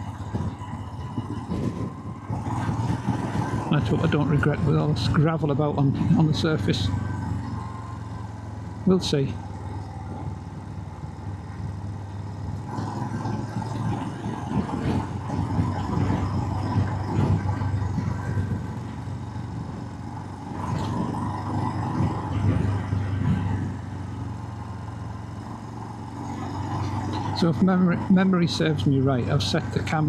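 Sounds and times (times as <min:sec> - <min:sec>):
wind on microphone: 0:00.0 - 0:03.8, 0:13.2 - 0:23.9
motorcycle engine running: 0:00.0 - 0:30.0.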